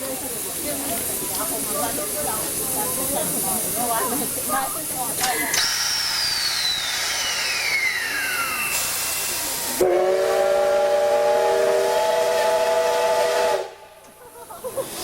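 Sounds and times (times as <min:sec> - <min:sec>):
steam hissing: 0:00.0 - 0:13.8
steam locomotive chime whistle: 0:05.5 - 0:09.2, 0:09.8 - 0:13.8.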